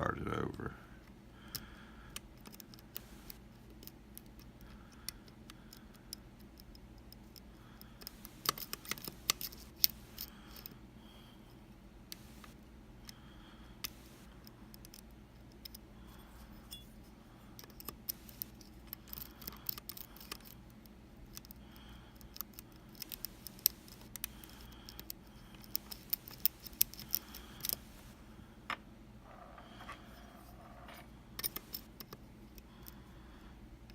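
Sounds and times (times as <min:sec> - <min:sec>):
lock picking metallic clicks: 0:01.5 - 0:10.8, 0:17.6 - 0:21.6, 0:22.2 - 0:27.9, 0:31.4 - 0:33.0.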